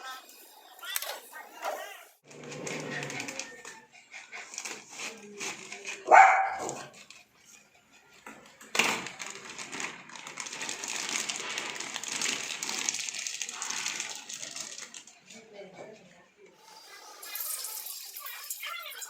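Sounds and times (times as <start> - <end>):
dog barking: 6.0 - 7.0.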